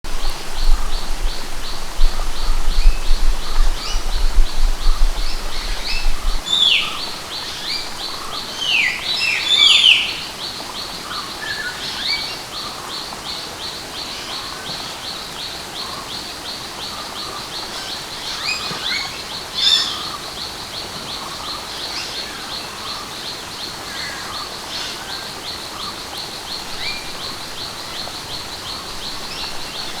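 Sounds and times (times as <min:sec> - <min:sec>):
low rumble: 0:00.0 - 0:07.2
falling water rushing: 0:00.0 - 0:22.8.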